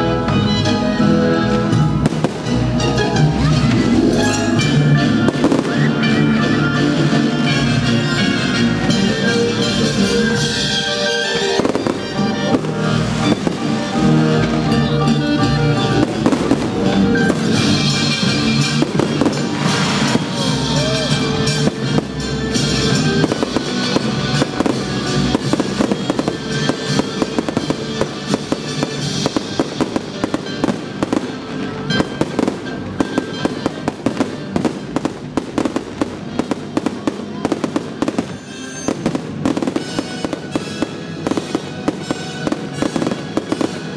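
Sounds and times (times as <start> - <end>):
loud recorded music: 0.0 - 43.9
fireworks bursting and crackling: 1.7 - 43.9.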